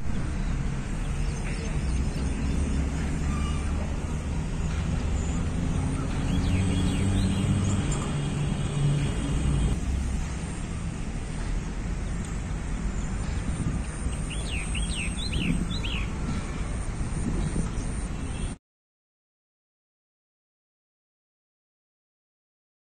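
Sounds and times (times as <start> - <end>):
bird chirping: 0.4 - 9.8, 13.0 - 16.4.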